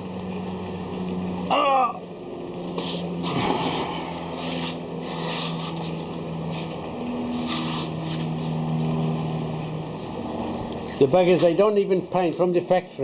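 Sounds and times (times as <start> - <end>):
steady low hum: 0.0 - 13.0
scraping and rubbing: 4.2 - 8.6.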